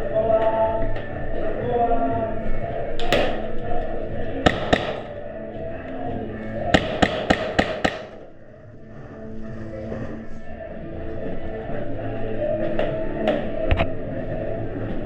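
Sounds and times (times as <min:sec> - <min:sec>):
airsoft gun cracks: 0:03.0 - 0:03.5, 0:04.5 - 0:05.2.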